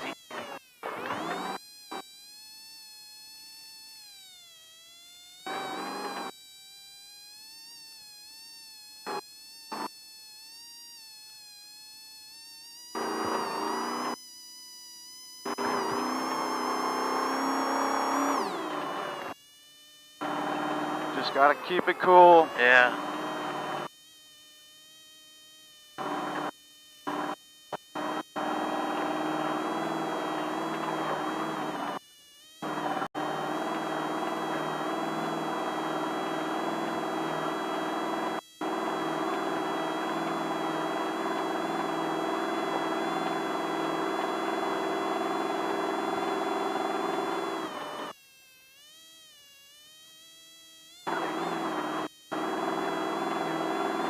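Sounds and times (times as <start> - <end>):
race vehicle whine: 20.2 - 23.8, 28.0 - 32.0, 32.8 - 48.1, 51.1 - 54.0.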